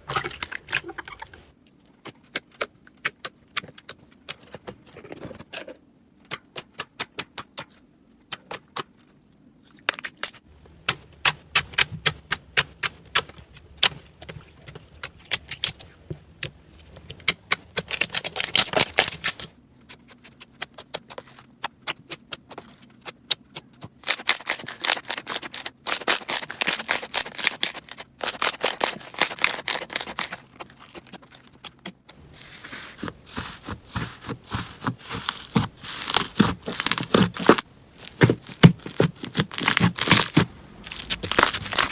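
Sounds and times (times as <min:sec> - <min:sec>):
slime clicking and crackling: 0:20.2 - 0:32.2, 0:33.0 - 0:41.9.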